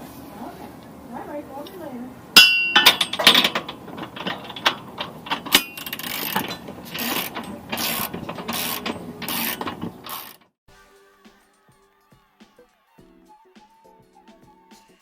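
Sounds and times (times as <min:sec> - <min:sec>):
ratchet wrench clicking: 0:05.5 - 0:10.4.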